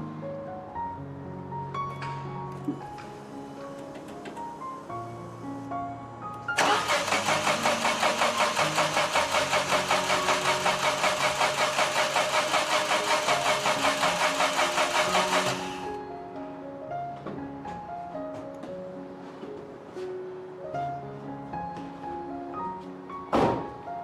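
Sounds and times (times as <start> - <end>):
car engine cranking: 6.6 - 15.9.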